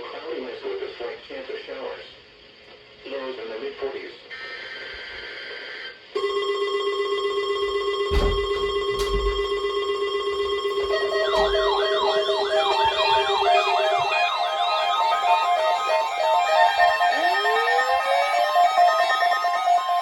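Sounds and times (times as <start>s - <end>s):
steady warning alarm tone: 6.2s - 20.0s
wailing siren with beeps: 7.4s - 20.0s
knocks: 8.0s - 9.7s.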